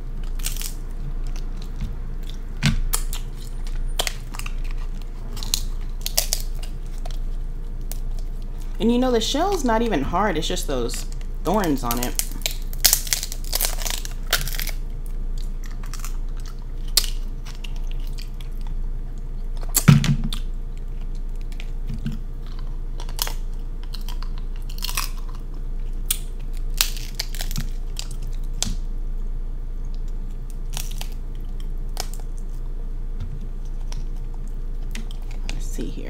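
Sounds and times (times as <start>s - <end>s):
crab shell clicks and crunches: 0.2s - 8.8s, 10.9s - 28.9s, 29.9s - 32.6s, 33.4s - 35.6s
chewing and mouth sounds: 10.8s - 28.6s, 33.3s - 35.7s.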